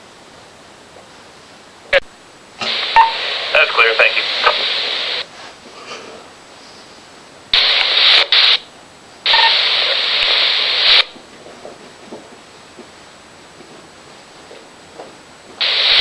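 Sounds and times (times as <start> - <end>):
scanner static hiss bursts: 0.0 - 5.6, 6.3 - 11.3, 14.8 - 16.0.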